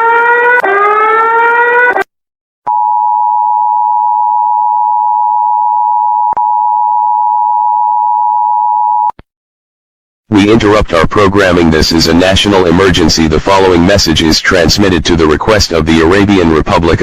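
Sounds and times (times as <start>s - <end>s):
buzzy rising alarm tone: 0.0s - 2.1s.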